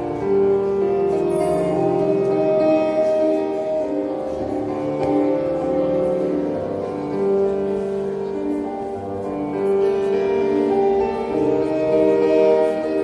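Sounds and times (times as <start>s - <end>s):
slow instrumental melody: 0.0s - 7.9s.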